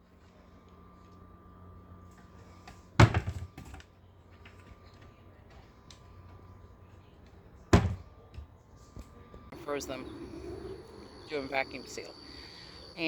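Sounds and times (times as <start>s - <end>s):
faint steady hum: 0.0s - 13.0s
loud thump: 7.8s - 8.1s.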